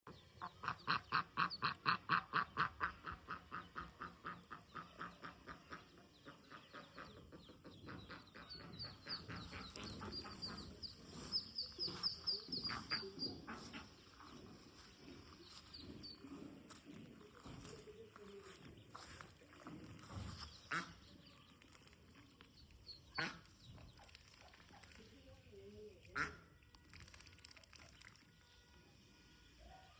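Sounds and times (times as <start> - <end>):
ducklings peeping: 0.1 - 25.1
duck quacking: 0.4 - 14.6, 20.7 - 21.0, 23.1 - 23.5, 26.1 - 26.5.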